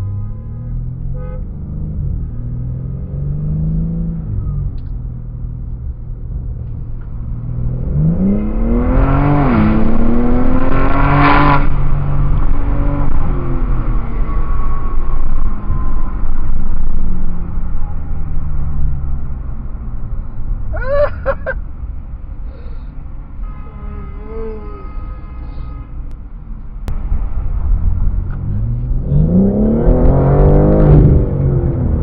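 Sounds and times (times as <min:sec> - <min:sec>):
sports car engine accelerating: 0:06.6 - 0:19.6, 0:27.8 - 0:32.0.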